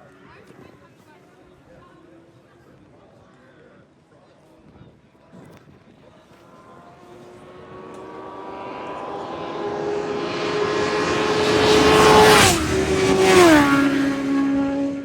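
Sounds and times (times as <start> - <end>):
racing motorcycles passing by: 6.5 - 15.0.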